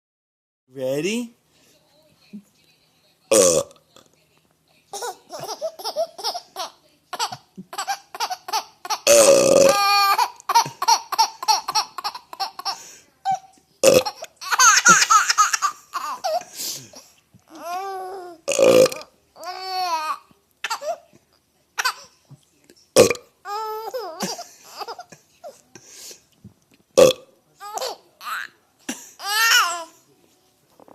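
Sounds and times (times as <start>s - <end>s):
person burping loudly: 3.3s - 3.8s, 9.0s - 10.0s, 13.8s - 14.2s, 18.5s - 19.1s, 23.0s - 23.3s, 27.0s - 27.3s.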